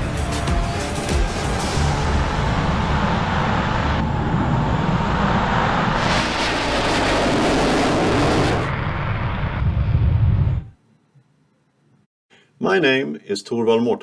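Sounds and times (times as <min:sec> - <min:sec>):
jet engine roar: 0:00.8 - 0:10.7.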